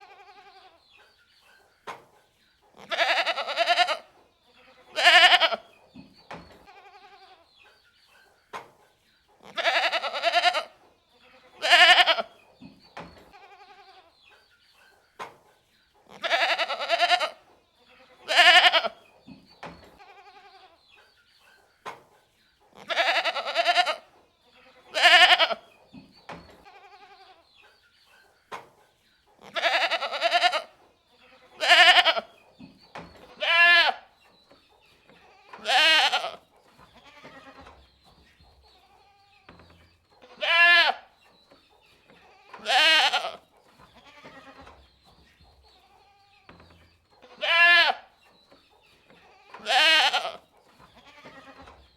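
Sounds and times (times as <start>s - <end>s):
goats bleating: 0.0s - 0.8s, 2.8s - 4.1s, 4.7s - 5.7s, 6.7s - 7.5s, 9.4s - 12.3s, 13.4s - 14.1s, 16.1s - 17.4s, 18.0s - 19.0s, 20.0s - 20.8s, 22.8s - 25.7s, 26.6s - 27.4s, 29.4s - 32.3s, 33.4s - 34.1s, 35.3s - 37.7s, 40.3s - 41.1s, 42.2s - 43.4s, 44.0s - 44.7s, 47.3s - 48.1s, 49.2s - 50.4s, 51.0s - 51.7s.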